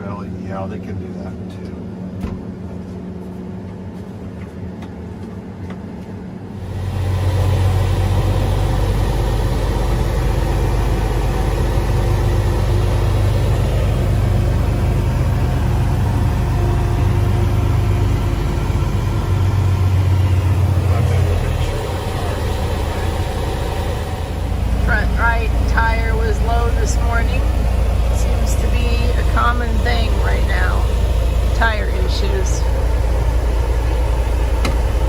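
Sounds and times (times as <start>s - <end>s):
vehicle engine rumbling: 0.0s - 35.0s.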